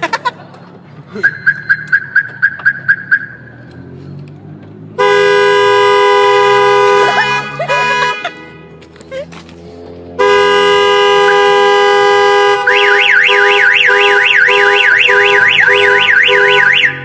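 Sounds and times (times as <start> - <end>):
car horn short toots: 5.0 - 8.7
loud two-tone horn blaring: 5.0 - 8.8, 10.1 - 17.0.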